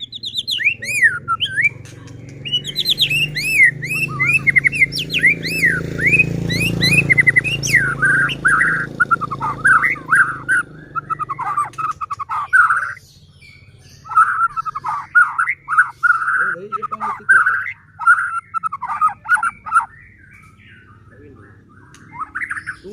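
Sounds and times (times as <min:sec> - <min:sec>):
songbird singing: 0:00.0 - 0:22.9.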